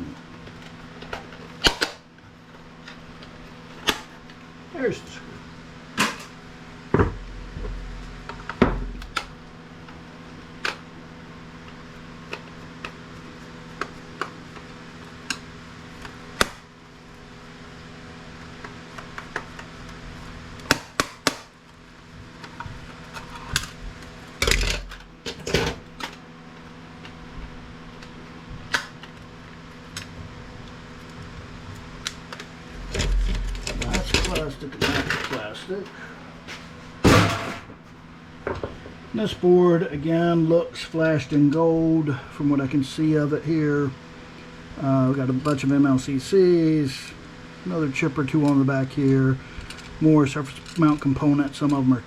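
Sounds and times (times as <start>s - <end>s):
steady low hum: 0.0s - 52.0s
clatter of small parts: 24.4s - 26.2s.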